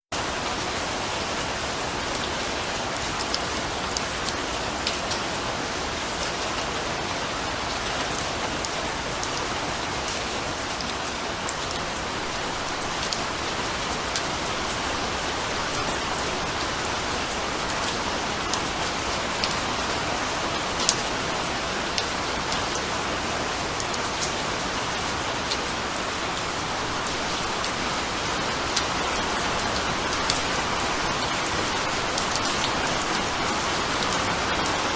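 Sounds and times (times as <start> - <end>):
steady rain hiss: 0.2 - 34.9
raindrops ticking on hard surface: 7.6 - 24.6, 25.4 - 34.9.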